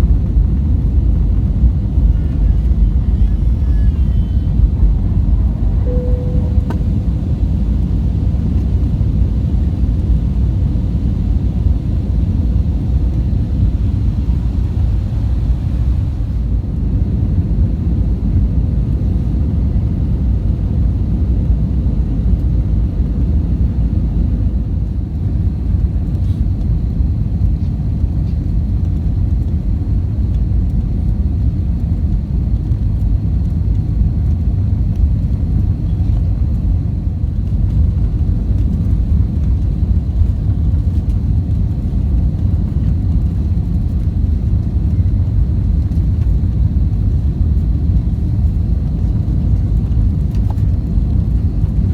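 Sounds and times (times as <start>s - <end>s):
airliner cabin engine rumble: 0.0s - 51.9s
faint short tone: 5.7s - 7.3s.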